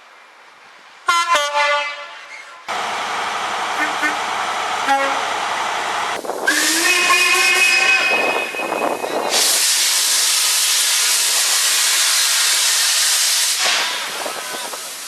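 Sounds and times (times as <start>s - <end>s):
compressed air venting hiss: 9.2s - 15.0s.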